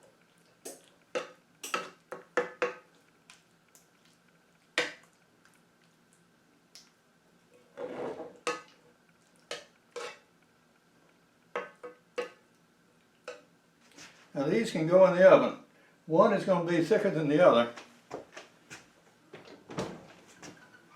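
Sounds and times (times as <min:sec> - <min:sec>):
dishes and utensils clinking: 0:01.2 - 0:02.8.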